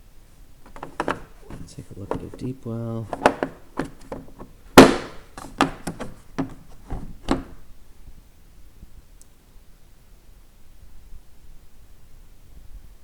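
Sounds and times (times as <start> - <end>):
sockets clicking and tapping: 0.7 - 7.6
sockets knocking: 0.7 - 7.6.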